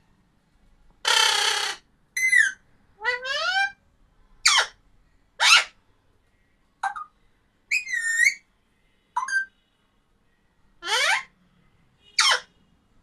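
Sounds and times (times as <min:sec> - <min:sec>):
parrot whistling calls: 0:07.7 - 0:08.4.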